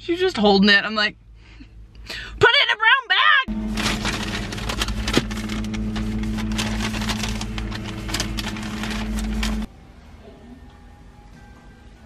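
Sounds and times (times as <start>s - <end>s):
low hum and rumble: 3.4s - 11.1s
paper bag crinkling: 3.5s - 9.7s.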